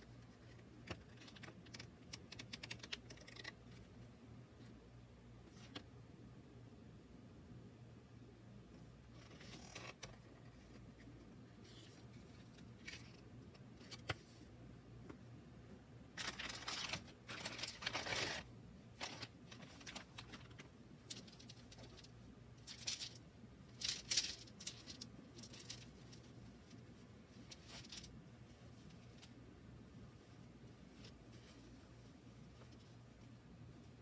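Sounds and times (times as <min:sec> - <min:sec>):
paper or plastic rustling: 0:16.2 - 0:26.8, 0:27.4 - 0:29.3.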